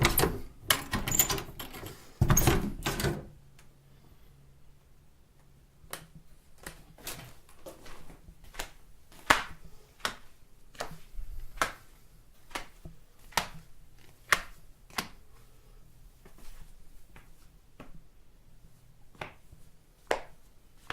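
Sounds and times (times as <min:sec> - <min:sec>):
footsteps in soft slippers: 0:06.1 - 0:20.9.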